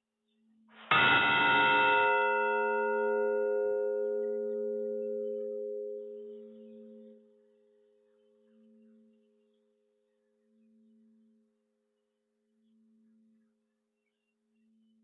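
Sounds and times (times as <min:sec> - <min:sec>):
faint hum of bell ringing: 0:00.9 - 0:09.7.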